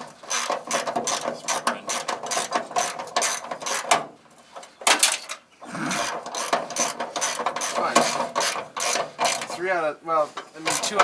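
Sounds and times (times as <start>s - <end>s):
hand ratchet clicking: 6.0s - 9.5s.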